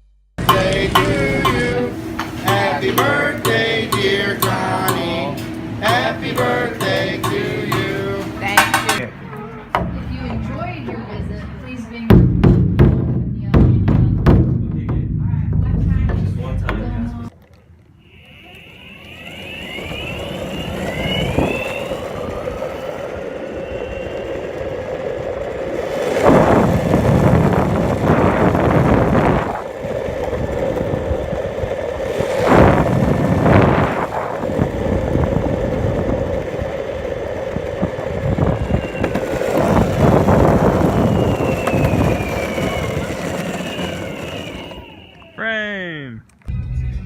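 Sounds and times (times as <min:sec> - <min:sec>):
grill fire roaring: 0:00.4 - 0:09.1, 0:19.0 - 0:45.4
fire flare-ups: 0:17.6 - 0:45.4.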